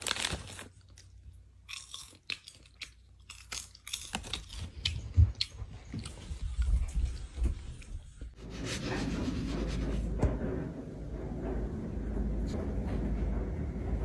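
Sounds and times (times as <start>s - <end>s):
person chewing crunchy food: 0.1s - 6.2s
low thumps: 8.4s - 14.0s.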